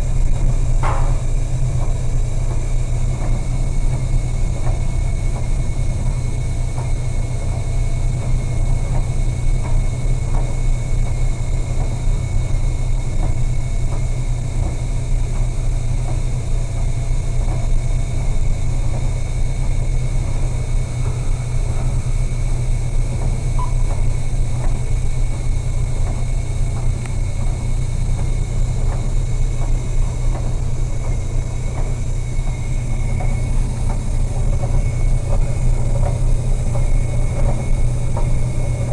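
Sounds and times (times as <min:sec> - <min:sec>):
ship engines rumbling: 0:15.8 - 0:38.9.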